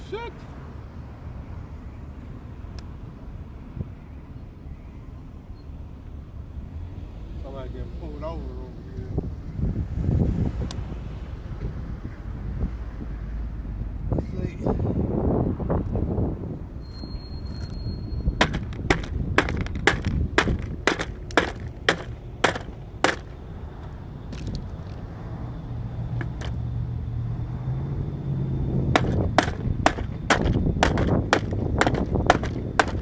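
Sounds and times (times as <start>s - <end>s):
hammer strikes: 18.4s - 23.4s, 28.9s - 33.0s.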